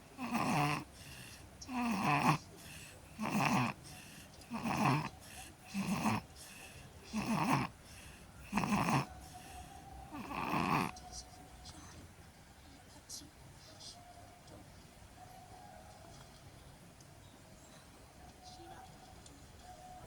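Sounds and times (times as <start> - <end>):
baby snoring: 0.1 - 11.1.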